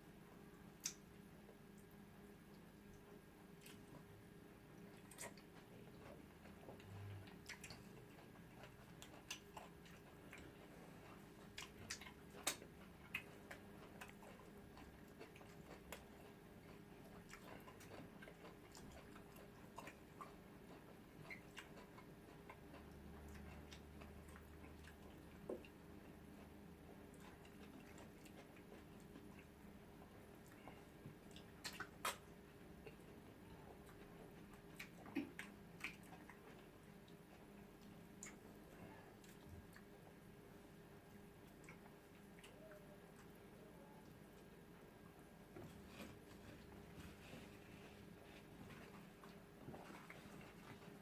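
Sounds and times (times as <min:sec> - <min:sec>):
faint steady hum: 0:00.0 - 0:51.0
chewing clicks and smacks: 0:00.8 - 0:01.2, 0:01.8 - 0:04.1, 0:04.8 - 0:33.2, 0:33.8 - 0:38.6, 0:41.4 - 0:42.6.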